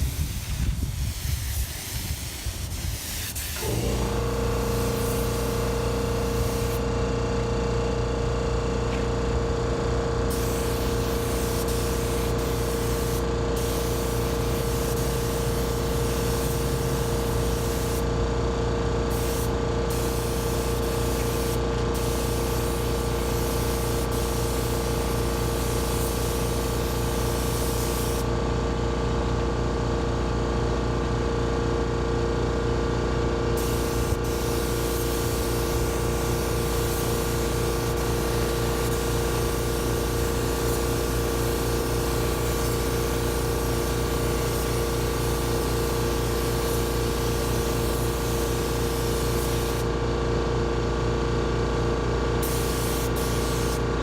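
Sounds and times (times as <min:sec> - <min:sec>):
spray gun hissing: 0:00.0 - 0:06.8, 0:10.3 - 0:18.0, 0:19.1 - 0:28.3, 0:33.6 - 0:49.8, 0:52.4 - 0:53.8
motor hum: 0:03.6 - 0:25.9.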